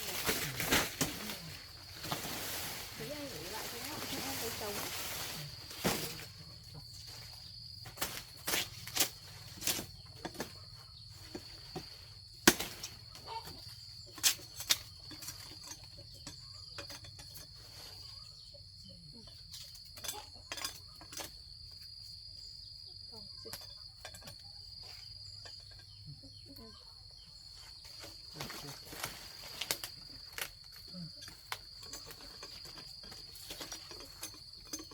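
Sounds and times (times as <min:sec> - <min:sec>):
high insect drone: 0:00.0 - 0:34.9
blade chopping sugarcane: 0:12.4 - 0:12.9.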